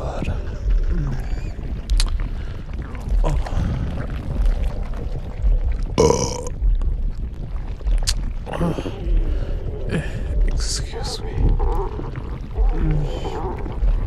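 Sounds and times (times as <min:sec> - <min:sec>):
soft low thumps: 0:00.0 - 0:14.0
person burping: 0:06.0 - 0:06.5.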